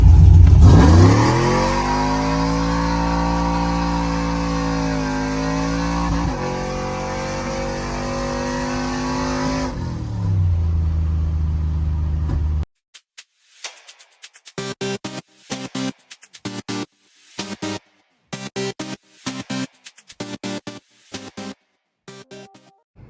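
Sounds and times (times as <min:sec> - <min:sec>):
pickup engine revving and idling: 0:00.0 - 0:12.6.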